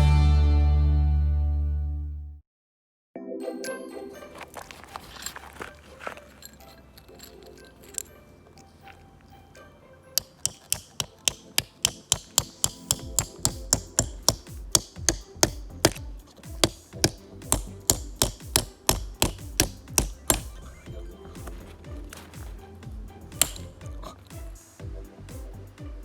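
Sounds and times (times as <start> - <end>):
sharp strikes with low thuds: 11.0 - 20.7.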